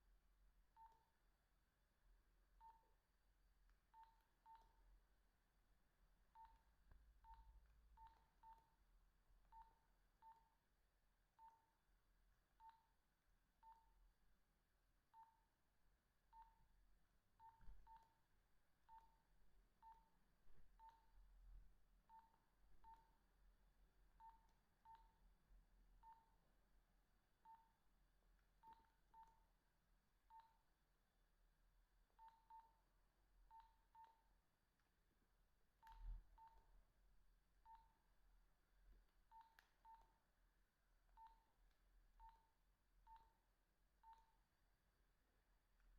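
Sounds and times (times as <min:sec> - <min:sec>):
phone keypad beeps: 0:00.8 - 0:01.2, 0:04.0 - 0:04.9, 0:17.4 - 0:18.2, 0:18.9 - 0:20.1, 0:22.1 - 0:23.2, 0:24.2 - 0:25.2, 0:28.6 - 0:29.5, 0:37.6 - 0:38.0, 0:42.2 - 0:43.4, 0:44.0 - 0:44.4.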